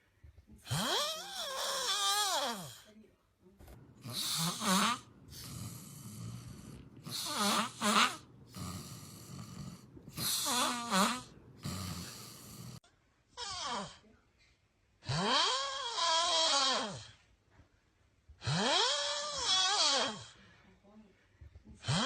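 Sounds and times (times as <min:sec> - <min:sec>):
moaning snore: 0:00.7 - 0:02.8, 0:03.7 - 0:12.8, 0:15.1 - 0:17.2, 0:18.4 - 0:20.4
person snoring: 0:00.7 - 0:02.8, 0:03.8 - 0:12.8.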